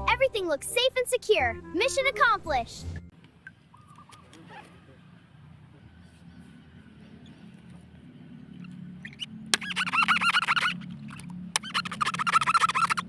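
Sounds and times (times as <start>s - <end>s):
high-pitched squeaky chirping: 8.6s - 13.0s.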